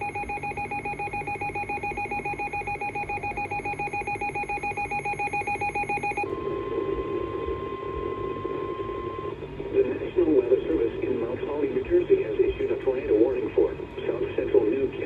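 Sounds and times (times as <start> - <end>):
steady alarm tone: 0.0 - 8.4
pulsing buzzy electronic alarm: 0.0 - 9.4.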